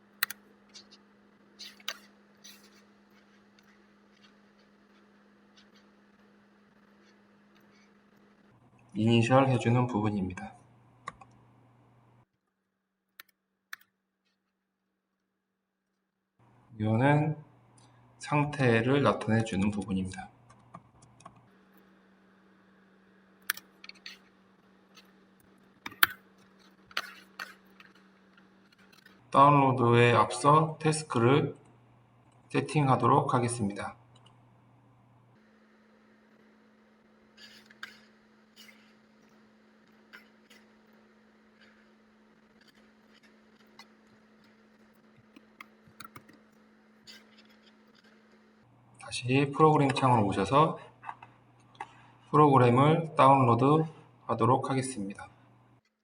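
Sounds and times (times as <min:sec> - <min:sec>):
faint hum: 0:00.0 - 0:55.9
computer mouse clicks: 0:00.2 - 0:01.0, 0:01.6 - 0:05.9, 0:11.0 - 0:11.4, 0:20.5 - 0:21.5, 0:23.4 - 0:24.3, 0:25.8 - 0:29.2, 0:37.4 - 0:48.4
computer keyboard clicks: 0:25.8 - 0:26.2, 0:45.3 - 0:46.4.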